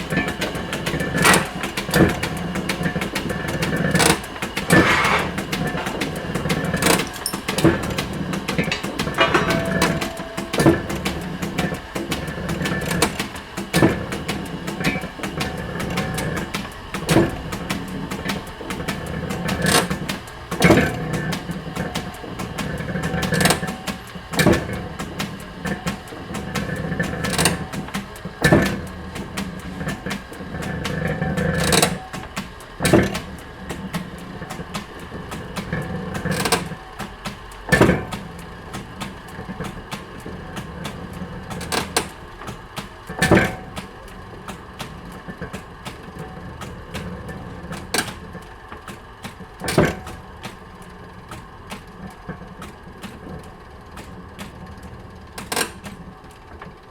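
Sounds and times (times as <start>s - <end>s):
factory machinery humming: 0.0s - 43.4s
machinery clicks and clanks: 0.0s - 56.9s.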